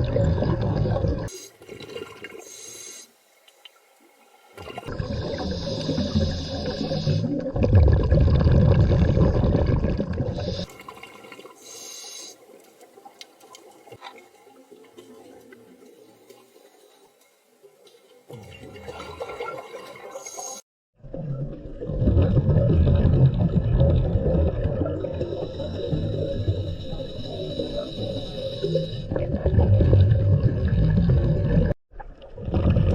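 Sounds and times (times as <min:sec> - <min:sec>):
scuba regulator bubbling exhale: 0:00.0 - 0:03.0, 0:04.6 - 0:12.4, 0:20.2 - 0:32.9.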